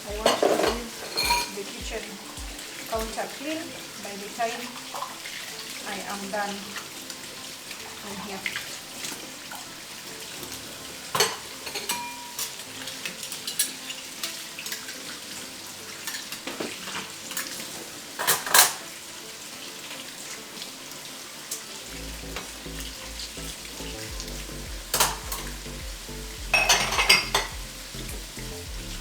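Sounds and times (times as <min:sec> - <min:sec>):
dishes and utensils clinking: 0:00.0 - 0:05.4, 0:08.4 - 0:20.7, 0:24.9 - 0:25.6, 0:26.4 - 0:27.8
food sizzling in a pan: 0:00.0 - 0:29.0.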